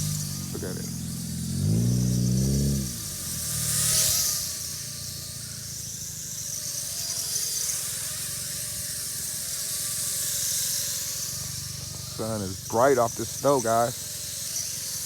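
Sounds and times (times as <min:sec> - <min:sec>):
toy drone propellers whirring: 0:00.0 - 0:01.2, 0:02.1 - 0:15.0.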